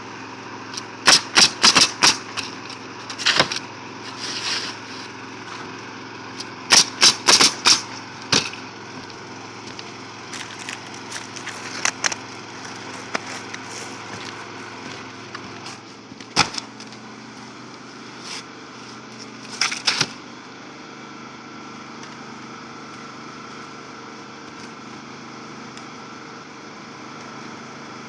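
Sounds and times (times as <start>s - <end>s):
low machine hum: 0.0s - 28.0s
nail gun firing into shingles: 0.7s - 3.6s, 6.7s - 8.6s, 16.3s - 16.8s, 19.6s - 20.2s.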